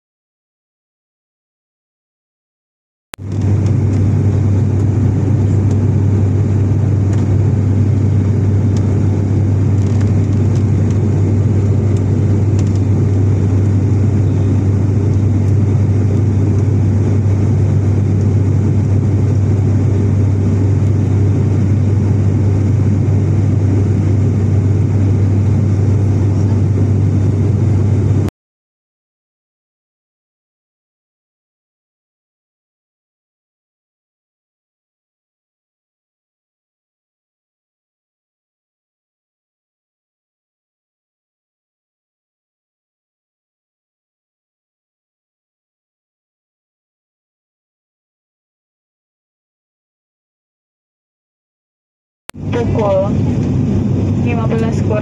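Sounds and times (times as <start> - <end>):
turboprop engines droning: 3.2 - 28.3, 52.4 - 55.0.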